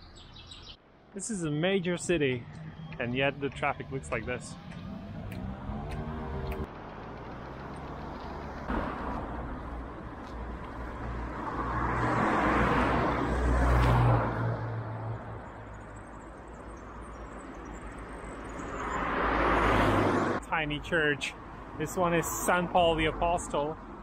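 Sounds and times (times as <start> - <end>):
car approaching: 1.4 - 20.5
car passing: 1.7 - 15.9, 17.6 - 20.4.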